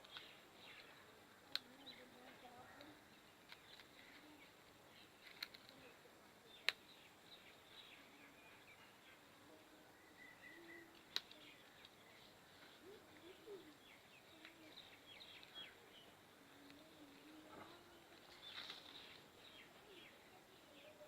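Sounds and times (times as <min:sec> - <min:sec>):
faint bird chirps: 0:00.0 - 0:21.0
low cooing: 0:12.7 - 0:14.8, 0:16.5 - 0:18.3.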